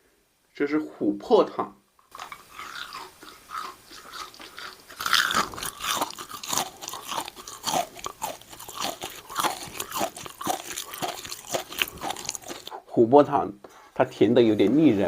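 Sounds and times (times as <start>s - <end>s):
crunchy candy chewing: 2.1s - 12.8s.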